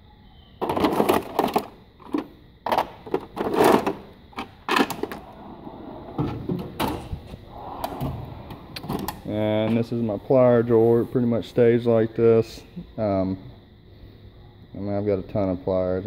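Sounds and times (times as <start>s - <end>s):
toolbox drawers sliding: 0.6s - 9.2s.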